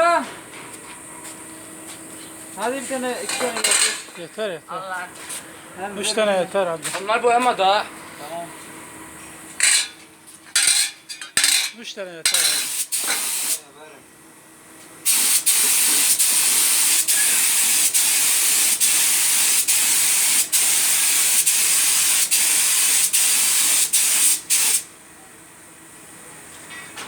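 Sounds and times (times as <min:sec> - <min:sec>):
paint spraying onto metal: 0:12.4 - 0:13.6, 0:15.0 - 0:24.8.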